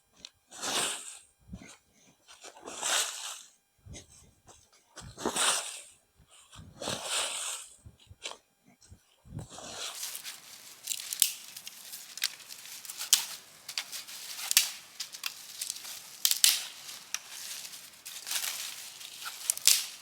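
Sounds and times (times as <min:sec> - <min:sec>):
dry twigs and leaves crunching: 0:09.5 - 0:20.0
twigs cracking: 0:09.6 - 0:20.0.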